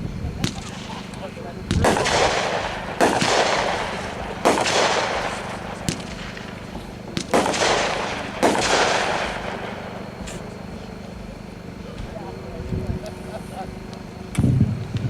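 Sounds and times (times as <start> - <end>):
firework shots banging: 0.4 - 10.7.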